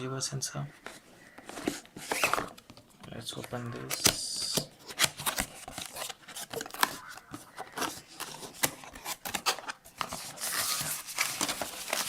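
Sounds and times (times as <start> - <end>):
packing rustling: 0.8 - 12.0
cardboard box being opened: 0.9 - 2.6, 4.8 - 12.0.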